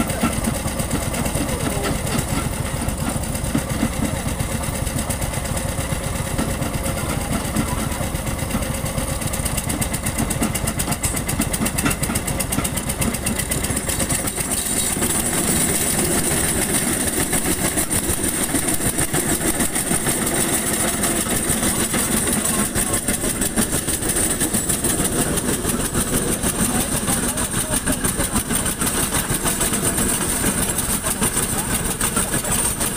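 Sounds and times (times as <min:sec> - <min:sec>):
machinery engine pulsing: 0:00.0 - 0:32.9.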